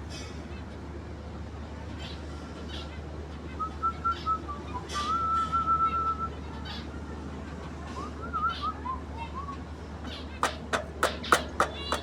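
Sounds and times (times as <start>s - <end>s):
birds chirping: 10.0s - 12.0s.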